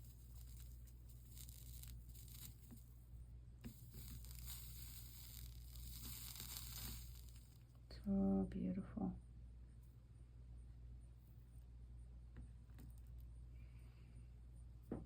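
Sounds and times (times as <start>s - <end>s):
soldering iron sizzling: 0.0s - 7.8s
steady low hum: 0.0s - 15.0s.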